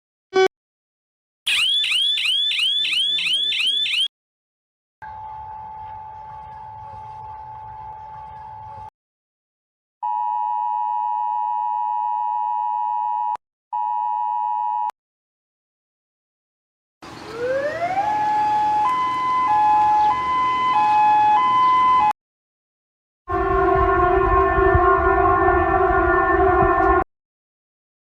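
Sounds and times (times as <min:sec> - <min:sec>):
two-pitch siren alarm: 0:01.5 - 0:04.1, 0:17.3 - 0:22.2, 0:23.3 - 0:27.0.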